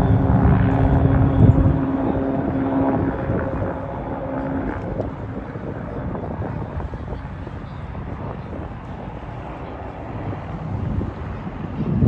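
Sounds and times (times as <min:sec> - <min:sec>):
loud engine running past: 0:00.0 - 0:05.6.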